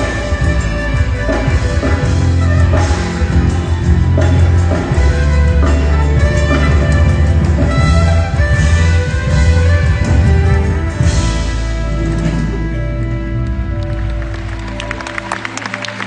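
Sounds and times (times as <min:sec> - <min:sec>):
live band playing pop-rock: 0:00.0 - 0:16.0.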